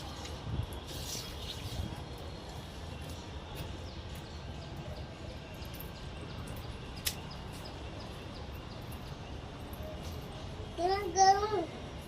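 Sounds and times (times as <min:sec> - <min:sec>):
sharp click: 0:07.0 - 0:07.4.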